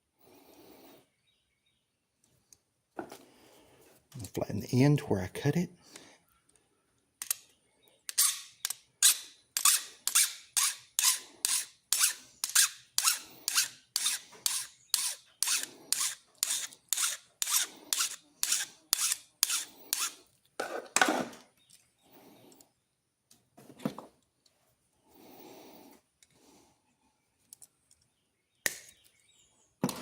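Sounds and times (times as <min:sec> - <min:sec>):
hand file rasping on metal: 0:08.1 - 0:20.2.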